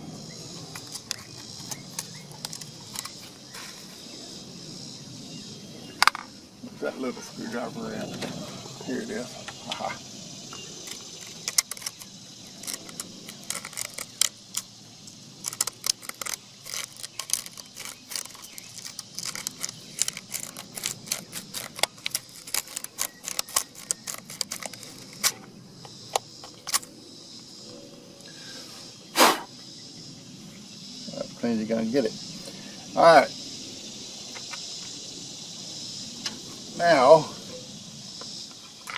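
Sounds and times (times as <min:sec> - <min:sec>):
screwdriver scraping metal contacts: 0:10.9 - 0:14.3, 0:15.4 - 0:25.3.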